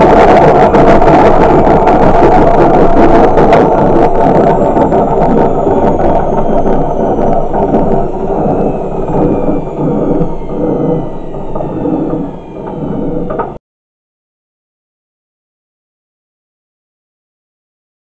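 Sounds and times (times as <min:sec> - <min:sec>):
faint falling whine: 0:00.0 - 0:13.6
washing machine drum rumbling grind: 0:00.0 - 0:13.6.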